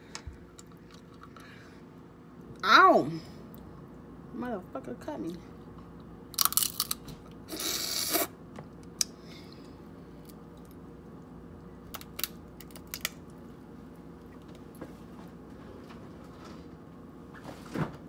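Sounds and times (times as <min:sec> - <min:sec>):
crab shells cracking: 0:06.3 - 0:07.1, 0:11.8 - 0:13.4.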